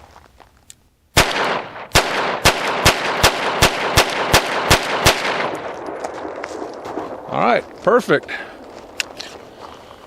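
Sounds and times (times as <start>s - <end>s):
pistol shots with echo: 1.2s - 7.3s.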